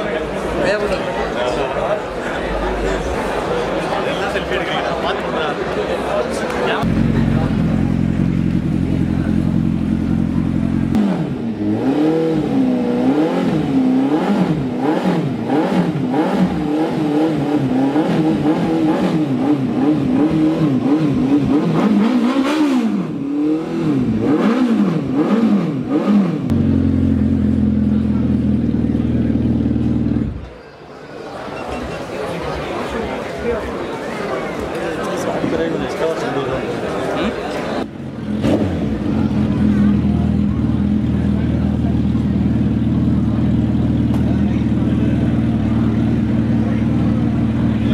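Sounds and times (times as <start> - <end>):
motorcycle engine revving: 6.8 - 30.5, 37.8 - 47.9.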